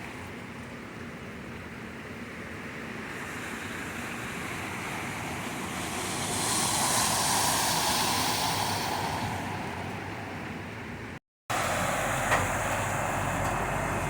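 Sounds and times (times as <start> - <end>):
car tyres splashing through floodwater: 0.0 - 14.0
rain hissing: 2.9 - 14.0.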